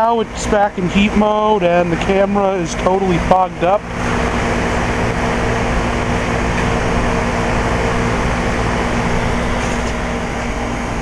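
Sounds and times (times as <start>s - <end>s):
heat pump fan noise: 0.0s - 11.0s
steady low hum: 0.0s - 11.0s.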